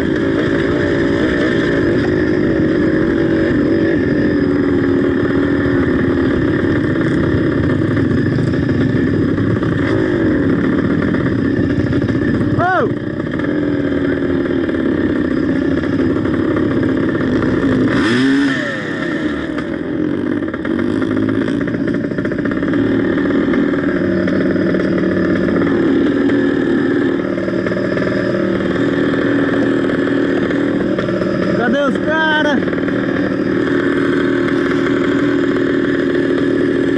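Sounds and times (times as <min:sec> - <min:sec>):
motorcycle engine revving hard: 0:00.0 - 0:36.9.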